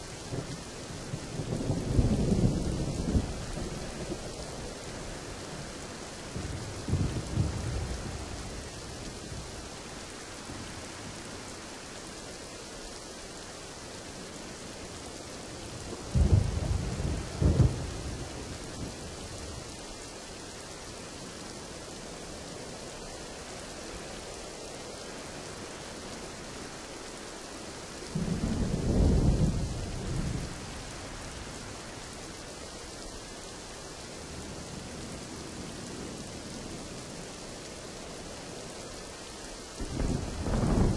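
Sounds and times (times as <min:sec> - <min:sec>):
heavy rain: 0:00.0 - 0:40.9
thunder rumbling: 0:16.0 - 0:19.3, 0:28.1 - 0:32.0, 0:39.8 - 0:40.9
thunder claps: 0:39.8 - 0:40.9.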